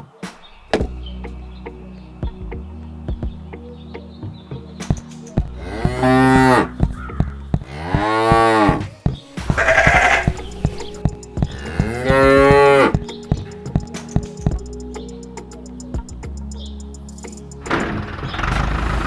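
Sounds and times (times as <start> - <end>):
cow mooing: 9.6 - 10.5
rough breathy cow call: 9.6 - 10.5.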